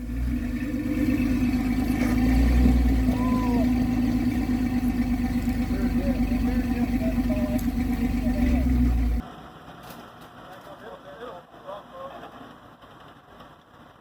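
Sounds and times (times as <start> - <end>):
vehicle engine running: 0.0 - 9.6.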